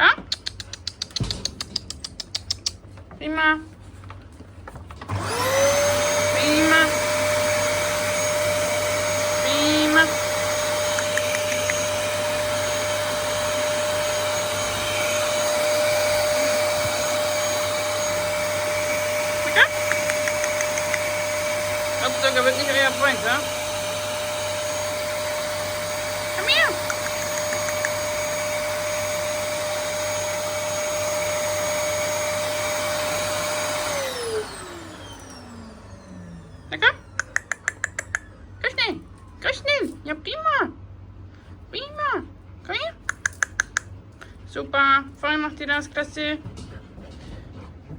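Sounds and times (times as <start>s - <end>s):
vacuum cleaner running: 4.9s - 37.5s
vacuum motor spinning down: 5.0s - 37.3s.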